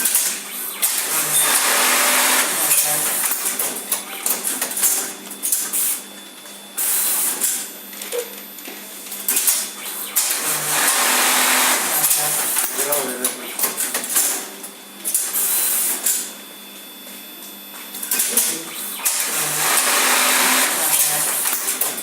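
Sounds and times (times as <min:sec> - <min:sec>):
sewing machine running: 0:00.0 - 0:05.2, 0:09.3 - 0:14.5, 0:18.1 - 0:22.0.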